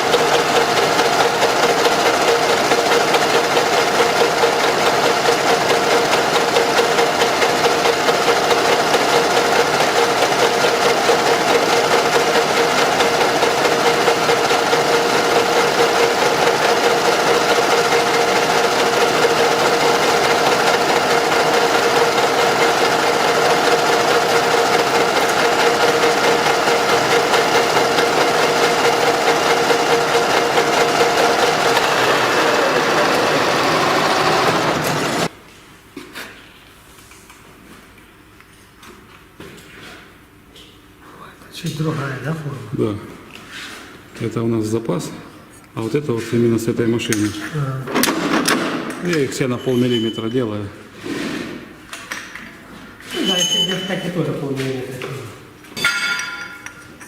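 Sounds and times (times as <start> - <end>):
motor-driven machine humming: 0.0 - 35.3.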